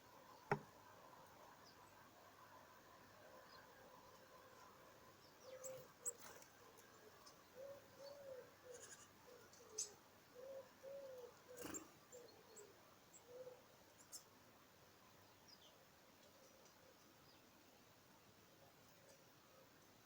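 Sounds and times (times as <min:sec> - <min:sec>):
pigeon cooing: 0:07.6 - 0:12.7, 0:13.3 - 0:13.6.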